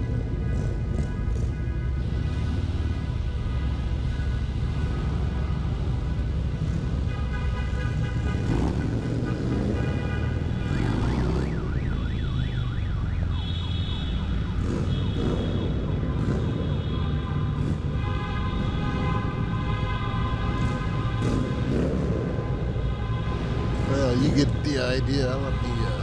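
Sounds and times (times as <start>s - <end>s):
car alarm: 10.7s - 17.4s.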